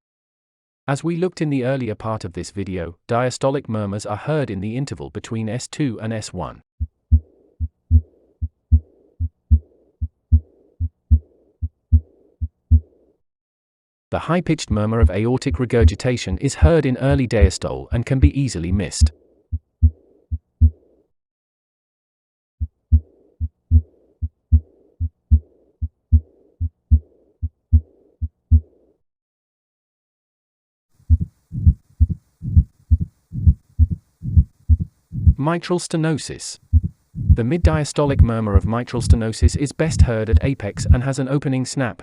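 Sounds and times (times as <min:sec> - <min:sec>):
faint heart murmur: 0:06.8 - 0:12.9, 0:19.0 - 0:20.8, 0:22.9 - 0:28.7, 0:31.1 - 0:35.4, 0:36.7 - 0:37.4, 0:39.0 - 0:41.0
heartbeat: 0:06.8 - 0:13.0, 0:19.0 - 0:20.9, 0:22.6 - 0:28.8, 0:31.0 - 0:35.4, 0:36.7 - 0:37.4, 0:39.0 - 0:41.0
faint high-pitched heart murmur: 0:31.1 - 0:35.4, 0:36.7 - 0:37.4, 0:39.0 - 0:41.0.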